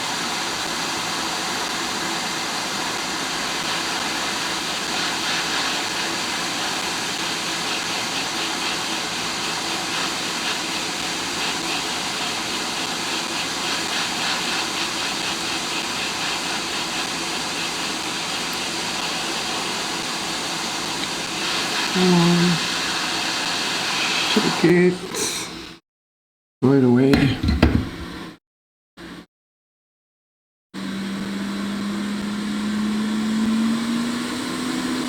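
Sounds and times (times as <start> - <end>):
hot air station hissing: 0.0 - 25.8, 27.2 - 28.3.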